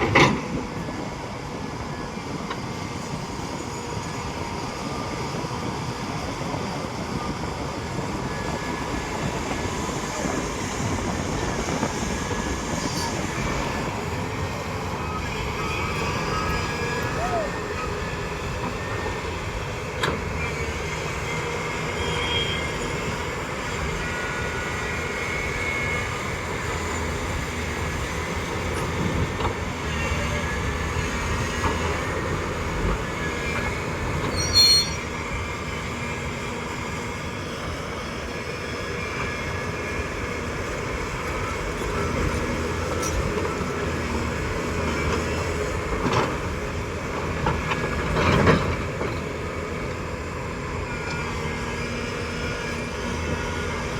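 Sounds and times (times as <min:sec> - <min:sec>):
excavator engine and machinery: 0:00.0 - 0:53.9
high squeals: 0:33.2 - 0:35.5.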